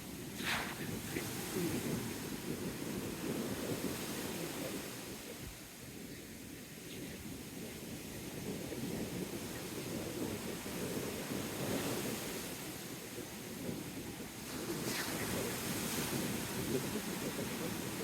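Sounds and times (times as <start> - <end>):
wind buffeting microphone: 0.0 - 18.0
sea surf washing in: 0.2 - 5.2, 14.4 - 18.0.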